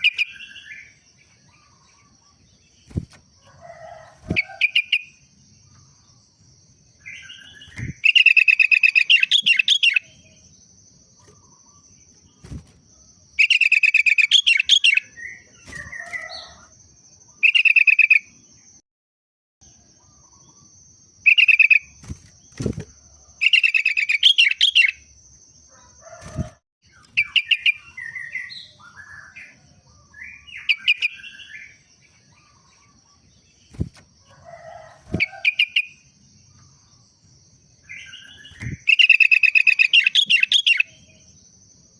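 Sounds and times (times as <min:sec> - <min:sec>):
bulbul singing: 0:03.7 - 0:18.5, 0:34.6 - 0:41.7.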